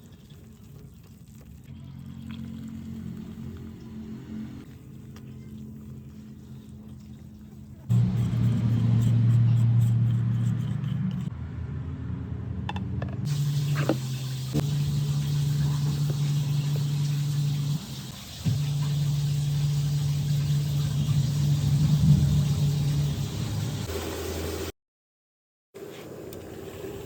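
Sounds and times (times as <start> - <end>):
low hum: 2.9 - 23.8
small electric motor running: 7.9 - 11.3.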